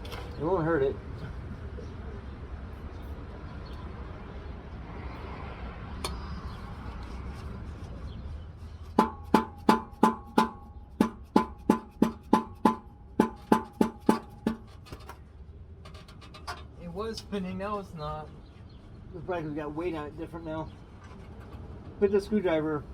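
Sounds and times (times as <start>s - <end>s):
hammer striking ringing metal: 9.0s - 14.7s.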